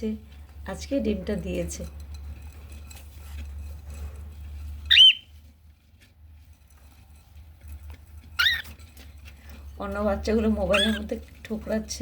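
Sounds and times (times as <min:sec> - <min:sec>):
cockatiel chirps: 0:04.9 - 0:05.3, 0:08.4 - 0:08.7, 0:10.7 - 0:11.1.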